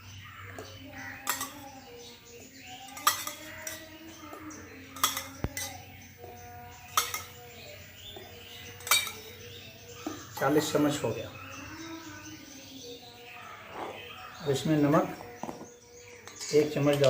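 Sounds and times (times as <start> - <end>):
spoon clinking against container: 0.5 - 10.7, 16.1 - 17.0.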